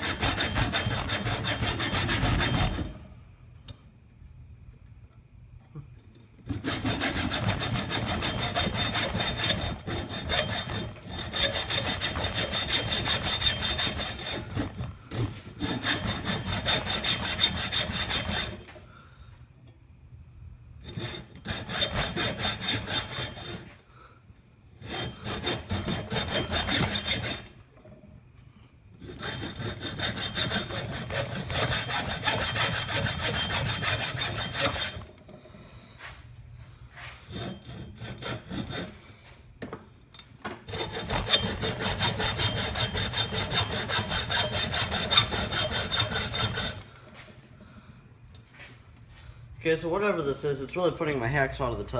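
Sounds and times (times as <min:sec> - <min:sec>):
hacksaw cutting metal: 0:00.0 - 0:03.0, 0:06.5 - 0:18.7, 0:20.8 - 0:23.8, 0:24.8 - 0:27.6, 0:29.0 - 0:35.1, 0:37.3 - 0:39.0, 0:40.7 - 0:46.9.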